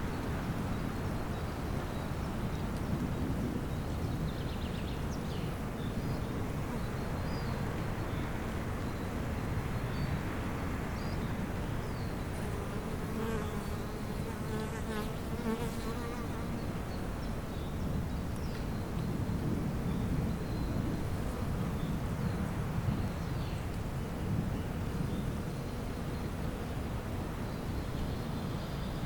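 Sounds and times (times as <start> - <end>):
bee buzzing: 12.4 - 16.6.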